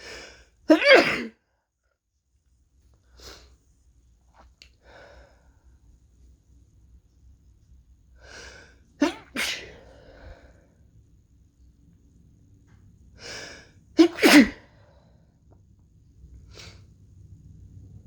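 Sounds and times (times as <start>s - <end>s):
person sneezing: 0.7s - 1.4s, 9.0s - 9.9s, 14.0s - 14.6s.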